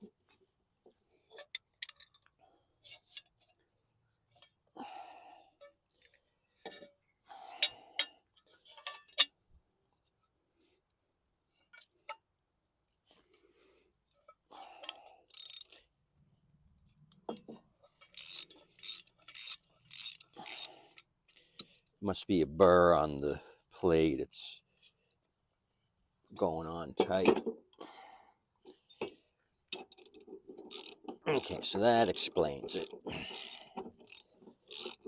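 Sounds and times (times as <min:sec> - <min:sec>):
metal tools clinking and scraping: 0:07.6 - 0:09.4, 0:29.8 - 0:35.0.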